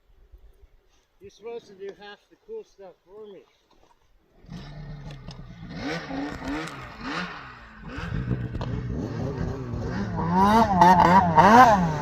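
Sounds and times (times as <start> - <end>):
snowmobile engine revving: 4.4 - 12.0.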